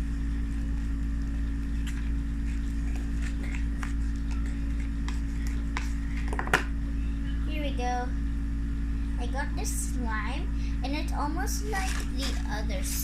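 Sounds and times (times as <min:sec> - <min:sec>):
steady low hum: 0:00.0 - 0:13.0
slime squelching: 0:00.3 - 0:06.4.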